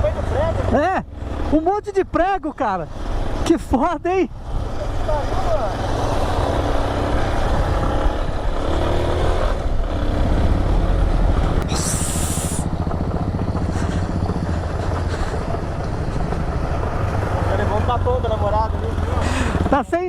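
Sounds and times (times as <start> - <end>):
motorcycle engine running: 4.3 - 20.0
wind noise: 6.9 - 8.9
brief high hiss: 11.7 - 12.7.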